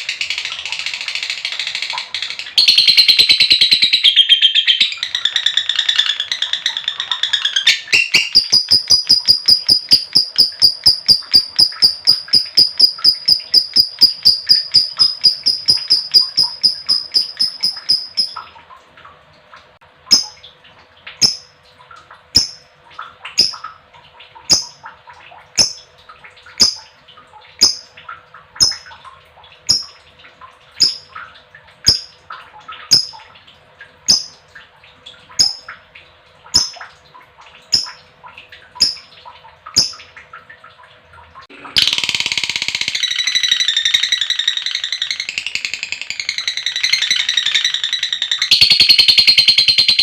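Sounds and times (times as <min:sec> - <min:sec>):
lovebird rapid trilling chatter: 0:06.9 - 0:18.4
lovebird sharp high calls: 0:07.4 - 0:18.4.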